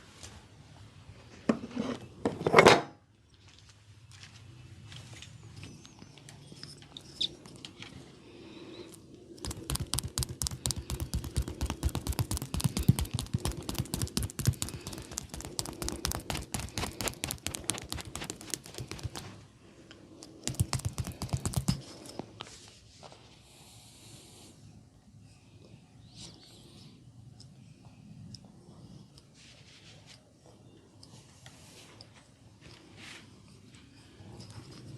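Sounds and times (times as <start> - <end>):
hands slapping in massage: 9.4 - 19.4.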